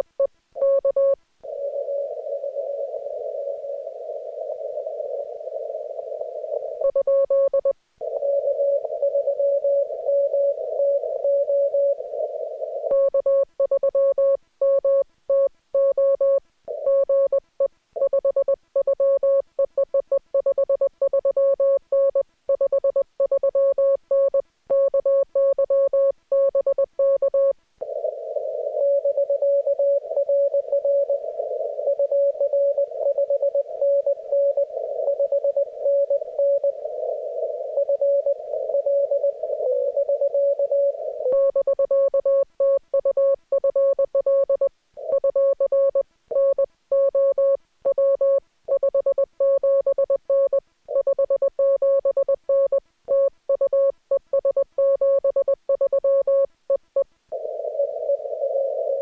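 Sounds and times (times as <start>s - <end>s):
receiver hiss: 0.0s - 15.0s, 23.2s - 59.0s
morse code sidetone: 18.0s - 56.8s.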